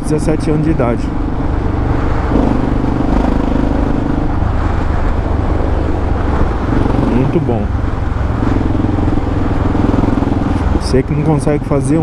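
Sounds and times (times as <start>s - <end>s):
motorcycle exhaust note: 0.8s - 12.0s.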